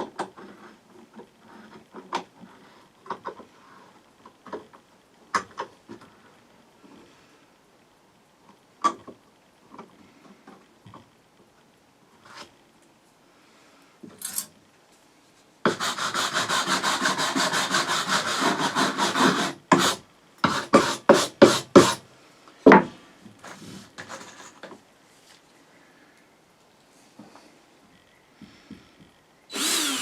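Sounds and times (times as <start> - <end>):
hand tool scraping wood: 15.7 - 22.0, 29.5 - 30.0.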